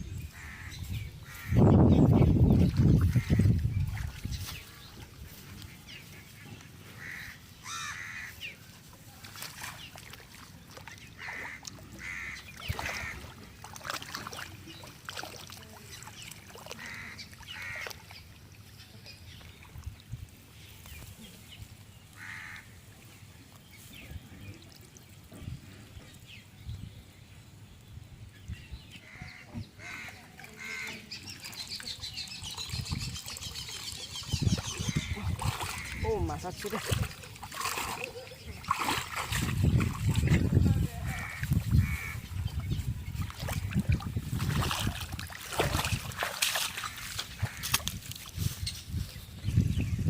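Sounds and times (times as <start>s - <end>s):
bird calls: 0.0s - 8.7s, 9.5s - 19.8s, 28.4s - 43.9s.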